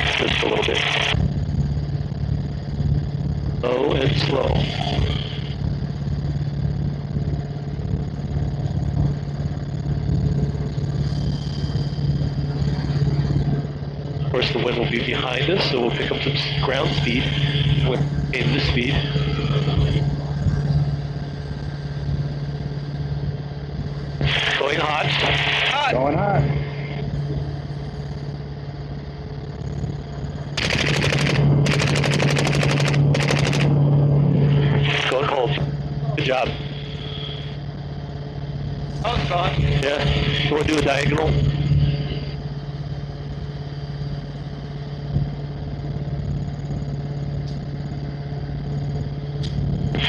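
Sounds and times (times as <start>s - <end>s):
helicopter engine and rotor drone: 0.0s - 50.0s
automatic gunfire bursts: 30.6s - 33.7s.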